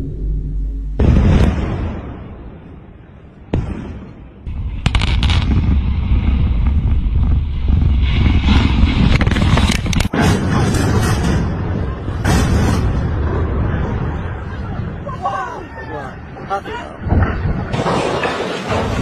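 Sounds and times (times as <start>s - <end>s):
sharp explosive bang: 0.9s - 2.6s, 3.5s - 13.3s
cracking detonations: 1.0s - 15.0s, 17.0s - 19.0s
heavy rumble of collapsing structure: 4.5s - 19.0s.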